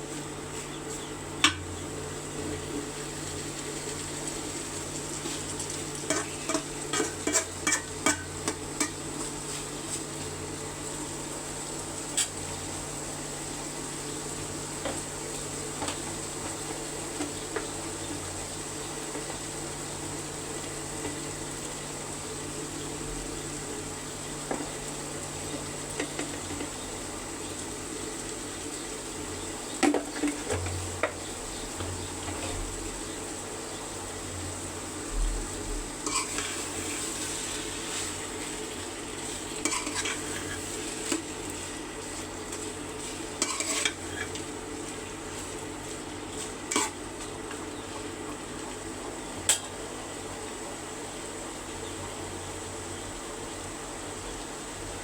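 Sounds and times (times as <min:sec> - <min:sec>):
spoon scraping cooking pot: 0:06.1 - 0:09.0, 0:36.0 - 0:37.1, 0:39.6 - 0:41.2, 0:43.4 - 0:44.4.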